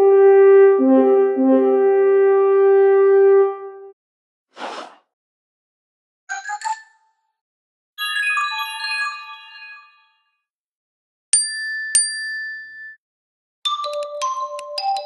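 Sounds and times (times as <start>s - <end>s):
horn-like alert tone: 0.0s - 3.9s
short whoosh: 4.6s - 5.0s.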